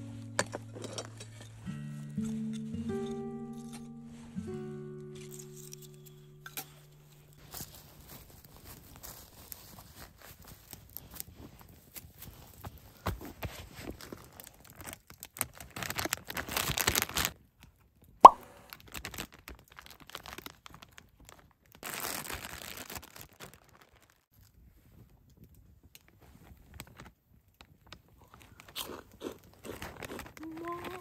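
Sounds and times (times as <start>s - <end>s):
crunching and rustling: 5.2s - 17.4s, 18.8s - 31.0s.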